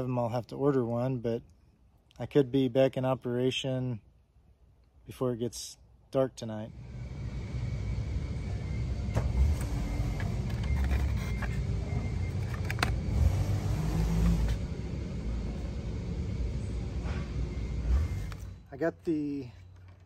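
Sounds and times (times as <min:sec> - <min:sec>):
car engine and road noise: 0:06.7 - 0:20.0.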